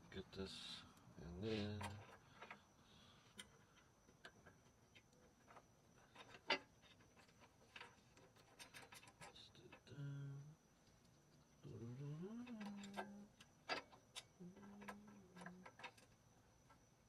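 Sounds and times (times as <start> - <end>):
small metal clicks: 12.2 - 16.8.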